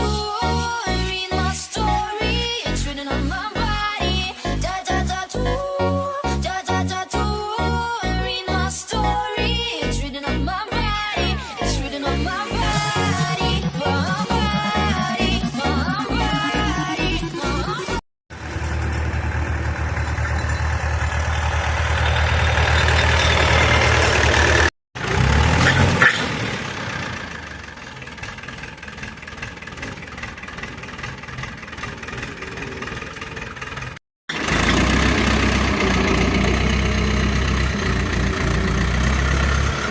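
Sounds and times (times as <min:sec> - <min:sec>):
tractor diesel engine rumbling: 0:11.2 - 0:17.7, 0:18.3 - 0:39.9.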